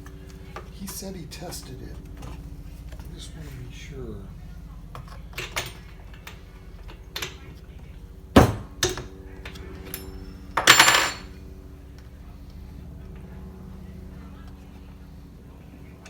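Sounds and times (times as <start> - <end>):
steady low hum: 0.0 - 16.0
metal tools clinking: 8.4 - 11.3
metal rattling clatter: 9.9 - 11.3.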